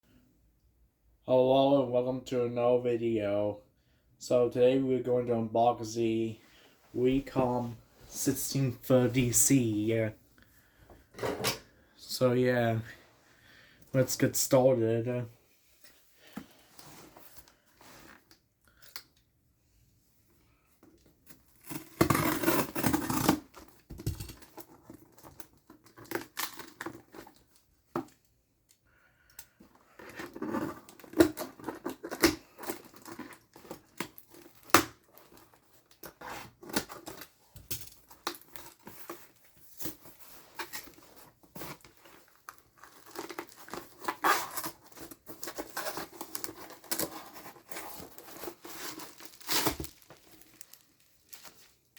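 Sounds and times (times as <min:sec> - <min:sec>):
packaging crinkling: 0:40.0 - 0:51.9
packaging tearing: 0:41.8 - 0:51.7.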